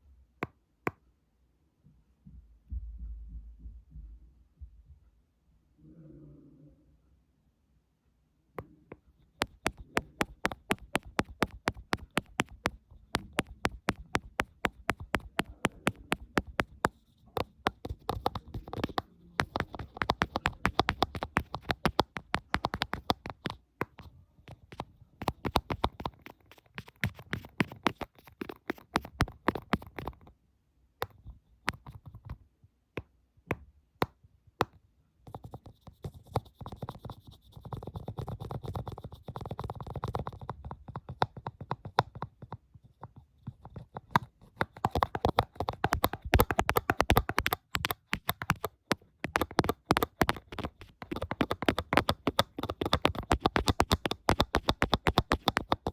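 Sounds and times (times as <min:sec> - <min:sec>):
fingernail scratching: 0:09.4 - 0:30.2, 0:35.3 - 0:40.6, 0:43.1 - 0:55.9
fingernail tapping: 0:09.4 - 0:30.2, 0:36.4 - 0:55.9.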